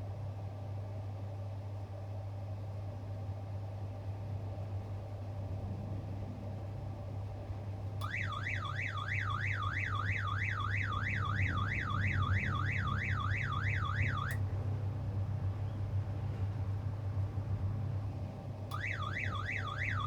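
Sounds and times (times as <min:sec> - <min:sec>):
low drone of crane engine: 0:00.0 - 0:20.0
warbling electronic alarm: 0:08.0 - 0:14.4, 0:18.7 - 0:20.0.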